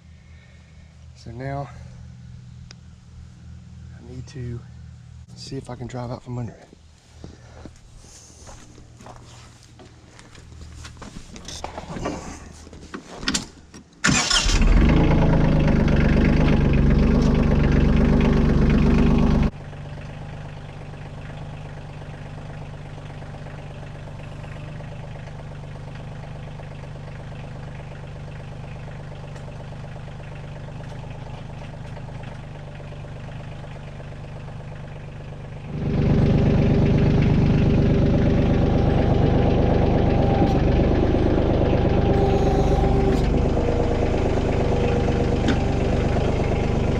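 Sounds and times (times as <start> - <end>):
tractor diesel engine running: 14.0 - 46.9.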